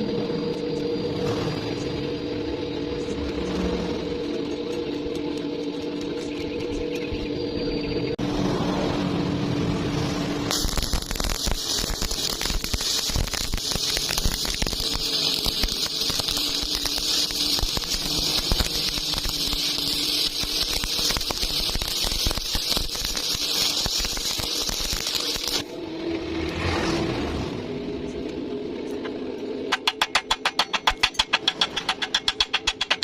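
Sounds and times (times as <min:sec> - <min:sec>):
welding arc crackling: 0:09.8 - 0:25.7, 0:29.7 - 0:33.0.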